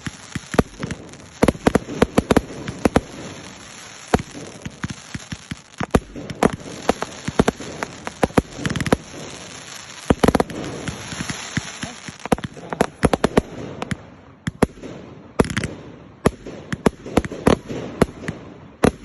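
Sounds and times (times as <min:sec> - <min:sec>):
steady hiss: 0:00.0 - 0:14.5
fireworks bangs and crackles: 0:00.0 - 0:19.0.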